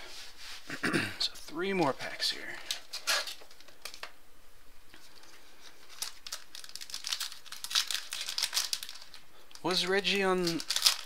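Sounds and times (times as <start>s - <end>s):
card pack wrapper crinkling: 5.0s - 11.0s.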